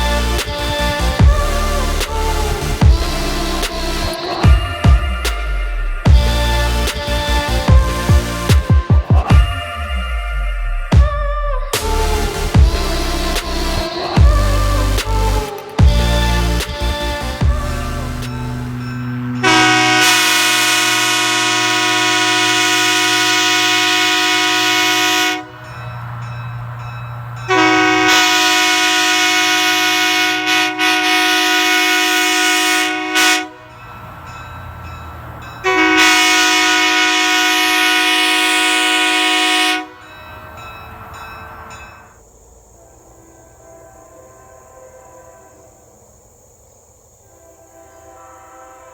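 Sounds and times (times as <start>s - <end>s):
locomotive horn chord: 11.9s - 41.6s, 42.8s - 46.0s, 47.2s - 48.9s.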